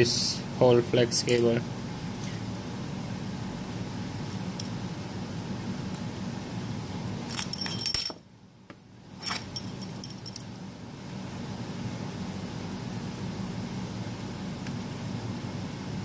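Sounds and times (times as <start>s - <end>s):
small metal objects clinking: 7.3s - 8.2s, 9.2s - 10.5s.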